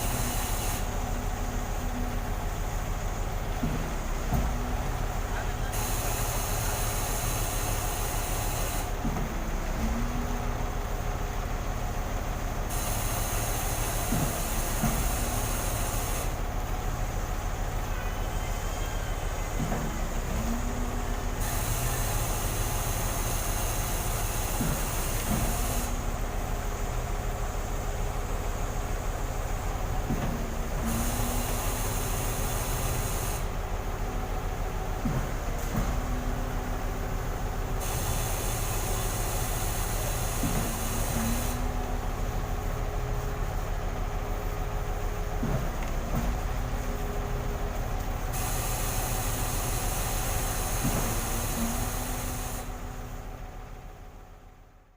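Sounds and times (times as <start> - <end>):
hydraulic hiss: 0.0 - 1.0, 5.7 - 9.2, 12.7 - 16.4, 21.3 - 26.2, 30.8 - 33.7, 37.7 - 41.8, 48.2 - 53.1
diesel engine running: 0.0 - 54.9
pump knock: 3.6 - 4.8, 14.0 - 15.4, 19.6 - 20.8, 24.5 - 25.8, 35.0 - 36.3, 40.3 - 41.8, 45.4 - 46.5, 50.7 - 52.6.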